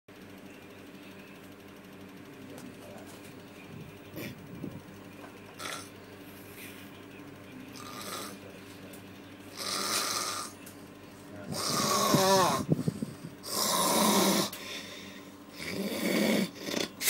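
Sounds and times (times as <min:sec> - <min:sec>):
person snoring heavily: 0:05.6 - 0:06.0, 0:07.8 - 0:08.4, 0:09.6 - 0:10.6, 0:11.5 - 0:17.0.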